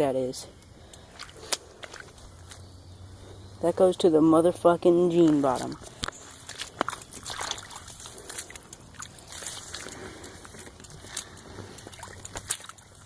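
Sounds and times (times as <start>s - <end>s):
footsteps wading through water: 0.9s - 2.6s, 5.1s - 13.0s
water sloshing and splashing: 1.0s - 2.6s, 5.0s - 13.0s.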